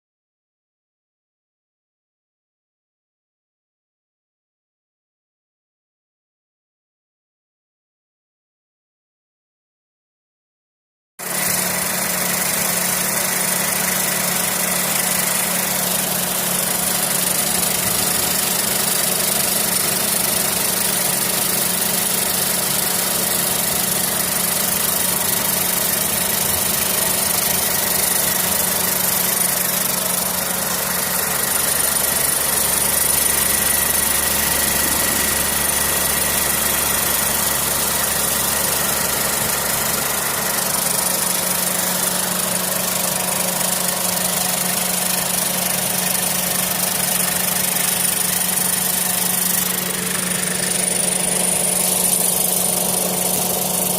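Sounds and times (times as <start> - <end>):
air conditioning compressor running: 11.2 - 53.9
car engine idling: 11.3 - 53.9
deep hum: 31.2 - 39.8.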